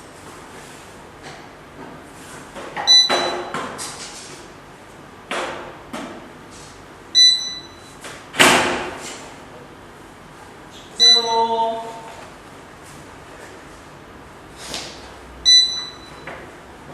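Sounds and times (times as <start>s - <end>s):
short electronic beeps: 2.9s - 3.5s, 7.2s - 7.9s, 11.0s - 11.6s, 15.4s - 16.3s.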